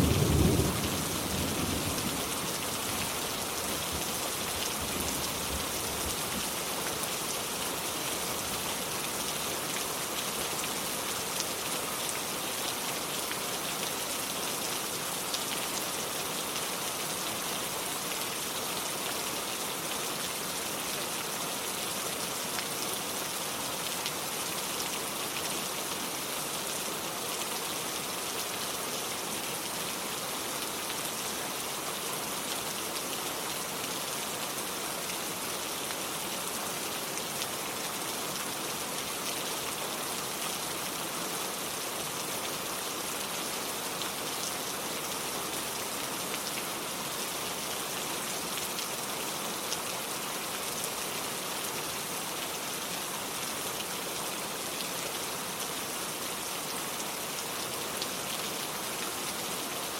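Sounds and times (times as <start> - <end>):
rain on hard surfaces: 0.0 - 59.9.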